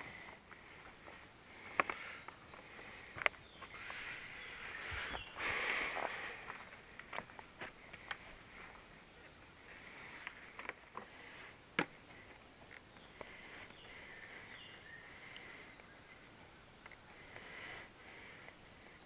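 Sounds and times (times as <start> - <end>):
faint insect chorus: 0.0 - 19.0.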